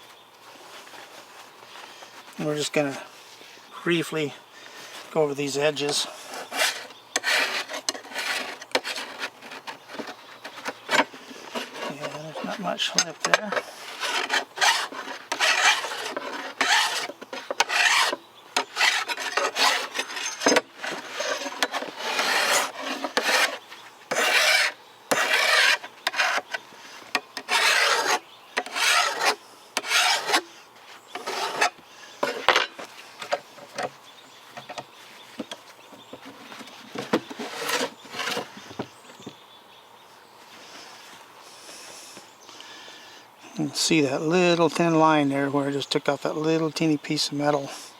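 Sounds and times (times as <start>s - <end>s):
hand file rasping on steel: 5.9s - 26.6s, 27.2s - 30.4s, 31.2s - 32.5s, 37.3s - 38.4s.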